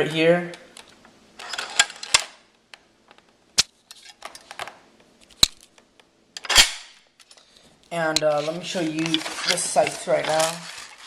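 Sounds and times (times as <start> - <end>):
handling rustle: 8.2 - 11.0.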